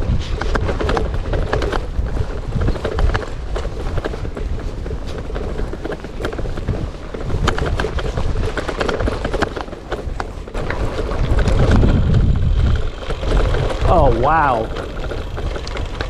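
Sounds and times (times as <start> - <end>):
bike rattling: 0.0 - 16.0
tyres crunching over gravel: 0.0 - 16.0
low rumble: 10.4 - 16.0.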